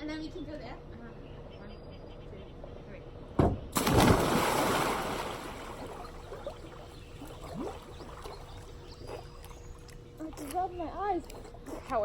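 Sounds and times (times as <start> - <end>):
pool water splashing: 3.8 - 11.3
water lapping and trickling: 3.8 - 12.0.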